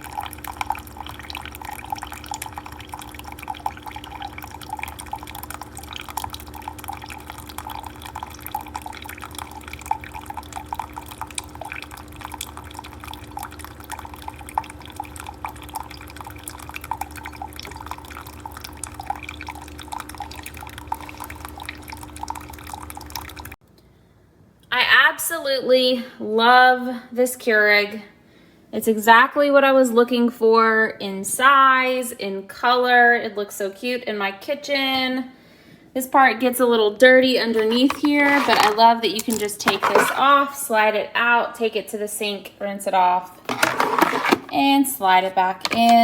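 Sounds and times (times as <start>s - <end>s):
coffee machine hum: 0.0s - 23.5s, 37.6s - 38.9s, 39.6s - 40.4s, 43.4s - 44.5s
coffee dripping into a cup: 0.0s - 23.6s.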